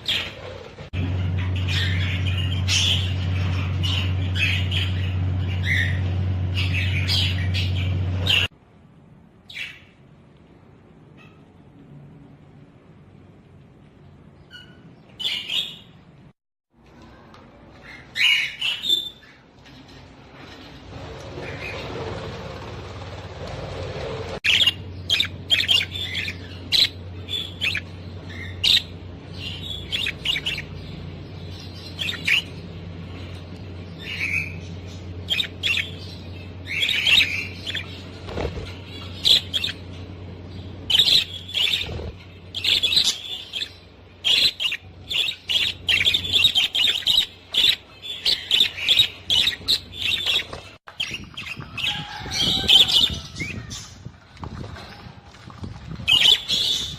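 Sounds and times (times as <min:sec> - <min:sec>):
budgerigars chattering and chirping: 0:01.0 - 0:08.5, 0:24.4 - 0:32.6, 0:33.2 - 0:54.0
steady low hum: 0:19.4 - 0:56.9.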